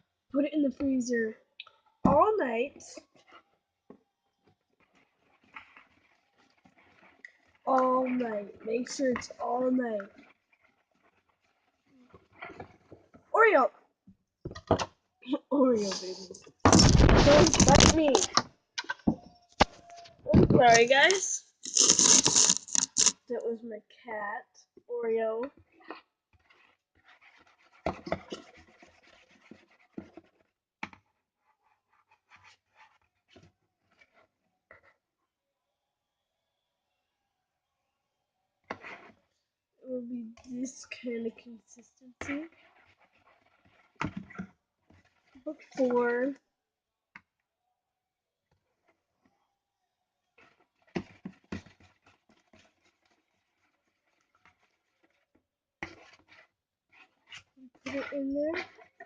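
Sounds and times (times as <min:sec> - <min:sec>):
scratching and rubbing: 0:02.8 - 0:03.6, 0:04.4 - 0:13.4, 0:15.6 - 0:23.3, 0:25.4 - 0:35.0, 0:38.6 - 0:39.2, 0:40.3 - 0:46.3, 0:50.4 - 0:59.0
short scrapes and taps: 0:15.8 - 0:23.2, 0:25.4 - 0:34.9, 0:50.4 - 0:59.0.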